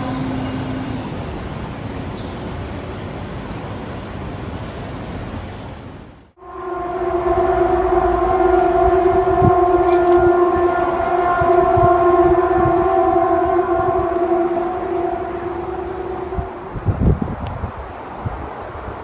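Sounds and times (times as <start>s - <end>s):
horn-like drone: 0.0s - 1.3s, 6.4s - 17.5s
low wind rumble: 6.4s - 19.0s.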